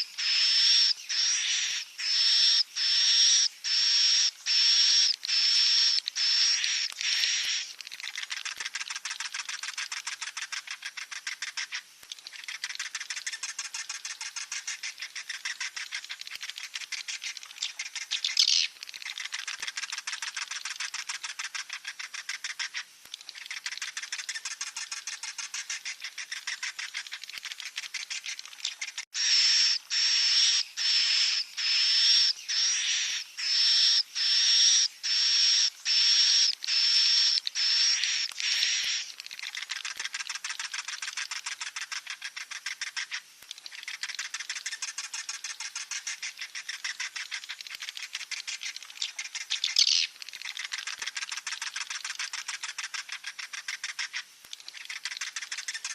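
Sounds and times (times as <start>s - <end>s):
drawn-out high bird calls: 0.0s - 39.8s.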